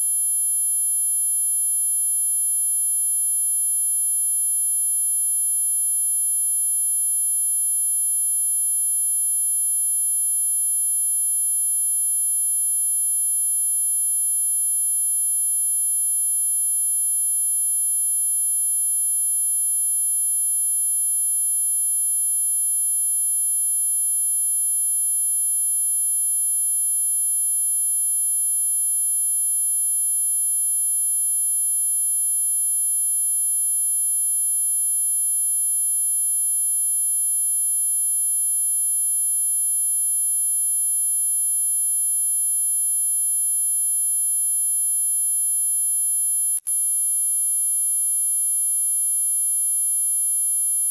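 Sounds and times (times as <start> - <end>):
high-pitched electronic sine tone: 46.4 - 50.9.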